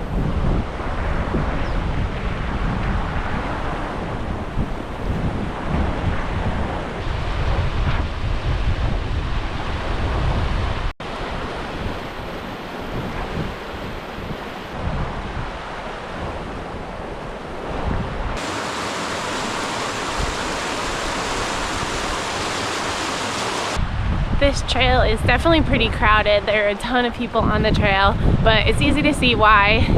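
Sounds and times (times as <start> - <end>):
wind buffeting microphone: 0.0 - 29.9
river rushing: 18.4 - 23.8.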